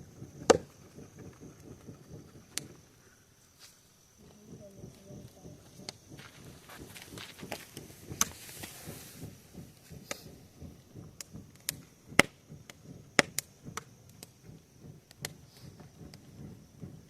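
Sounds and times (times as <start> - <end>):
low rustle: 0.0 - 11.8
bonfire crackling and popping: 0.0 - 17.0.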